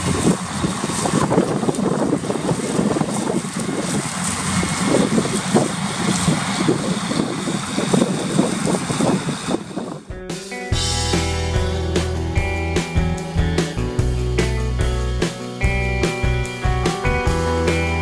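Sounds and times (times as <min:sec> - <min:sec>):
harvester mechanical rumble: 0:00.0 - 0:10.1, 0:10.8 - 0:18.0
wind buffeting microphone: 0:00.0 - 0:10.2
guitar music: 0:10.1 - 0:18.0.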